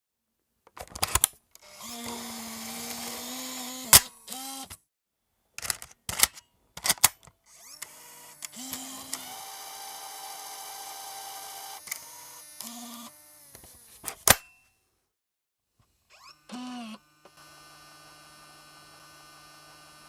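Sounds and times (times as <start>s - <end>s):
tape motor whirring: 1.6s - 4.8s, 7.5s - 14.1s, 16.1s - 20.0s
plastic and metal clicks: 5.6s - 9.2s.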